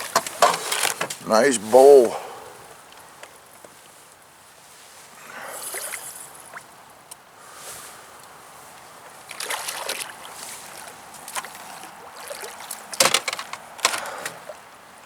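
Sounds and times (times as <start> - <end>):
water splashing against a canoe: 8.8 - 14.7.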